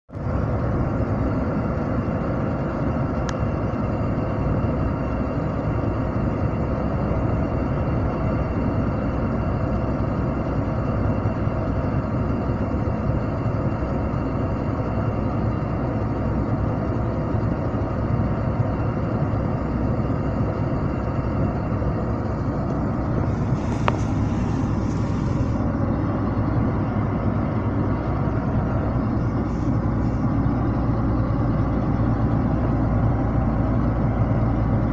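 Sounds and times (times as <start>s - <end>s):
vehicle engine and road noise: 0.1s - 34.9s.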